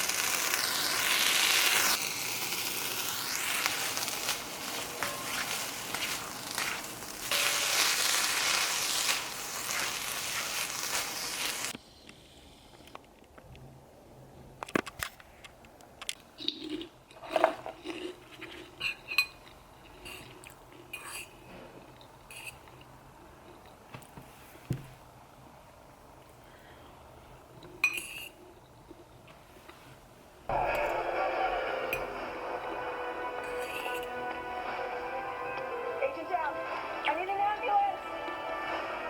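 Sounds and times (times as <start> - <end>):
loud steady hiss: 0.0 - 11.8
dishes and cutlery clinking: 18.8 - 20.3, 27.8 - 28.4, 33.4 - 34.1.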